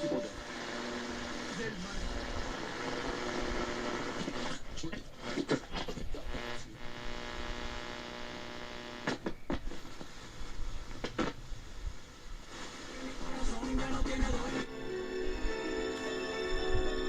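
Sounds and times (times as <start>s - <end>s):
music from radio station: 0.0s - 4.4s, 12.5s - 17.0s
electrical buzzing hum: 0.0s - 5.4s, 6.0s - 9.3s.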